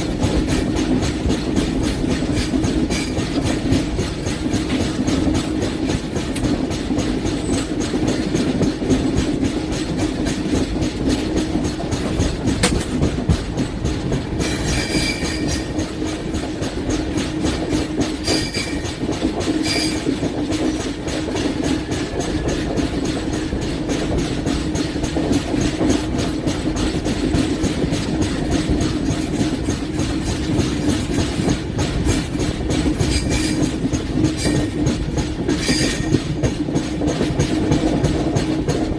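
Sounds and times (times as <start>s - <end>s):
train rumble: 0.0s - 38.9s
wheels clickety-clack on rails: 0.0s - 38.9s
high-pitched wheel squeals: 14.6s - 15.7s, 18.2s - 18.8s.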